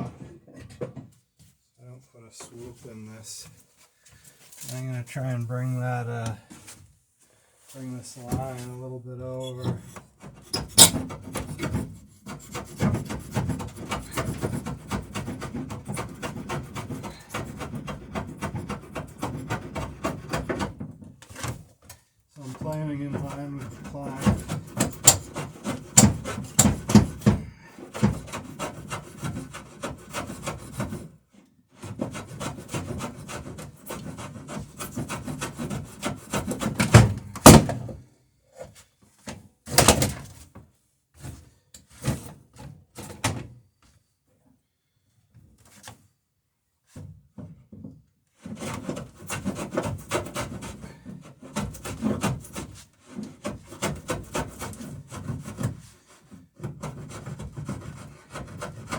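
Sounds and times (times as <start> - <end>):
hand plane shaving wood: 9.8 - 21.7, 22.4 - 38.0, 48.4 - 58.9.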